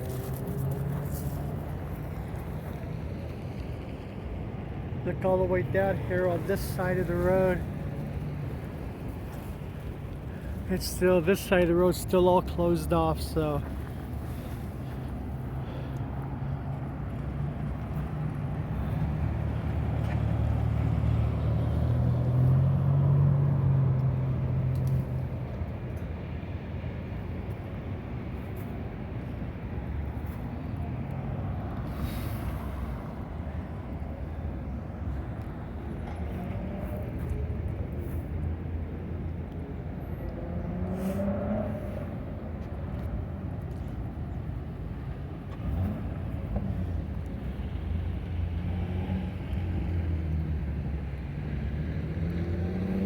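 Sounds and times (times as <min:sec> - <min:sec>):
car traffic passing: 0:00.0 - 0:53.0
vehicle accelerating: 0:16.7 - 0:25.3, 0:39.9 - 0:43.7, 0:45.5 - 0:53.0.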